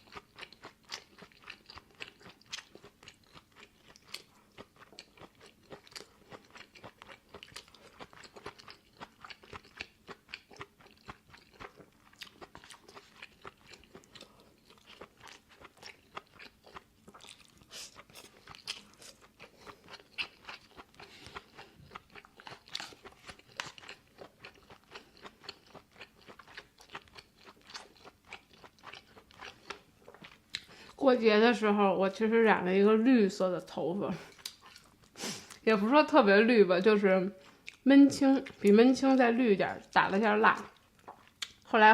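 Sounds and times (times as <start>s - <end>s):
person chewing crunchy food: 0.0s - 31.0s, 34.3s - 35.6s, 37.4s - 38.7s, 40.6s - 41.7s.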